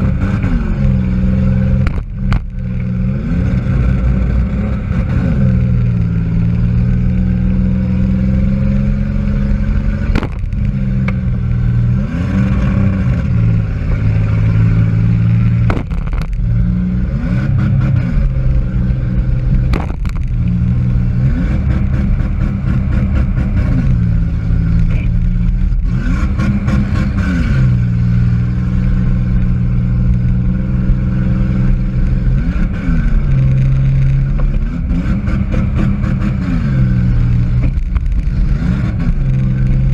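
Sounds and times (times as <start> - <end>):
car engine revving: 0.0 - 39.9
sharp bangs: 10.1 - 10.7, 15.6 - 16.4.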